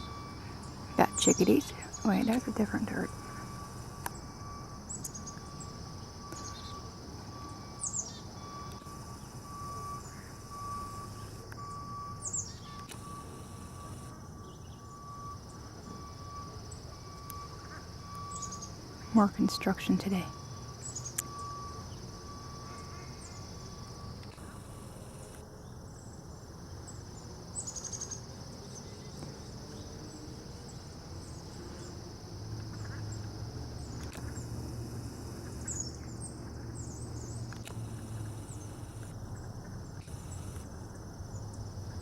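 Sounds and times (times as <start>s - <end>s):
crickets trilling: 0.0s - 42.0s
bird chirps: 4.9s - 6.9s, 7.5s - 8.5s, 11.1s - 12.9s, 18.2s - 19.2s, 20.8s - 22.1s.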